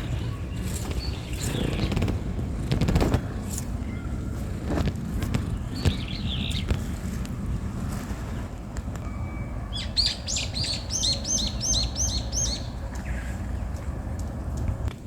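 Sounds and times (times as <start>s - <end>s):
steady low rumble: 0.0s - 15.0s
songbird singing high notes: 9.0s - 12.8s.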